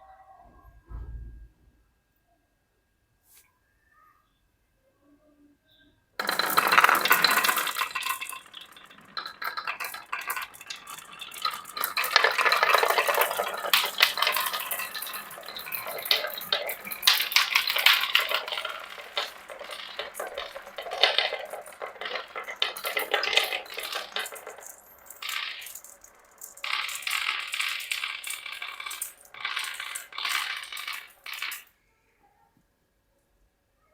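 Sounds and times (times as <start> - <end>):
marbles rattling down a marble run: 6.2 - 31.7.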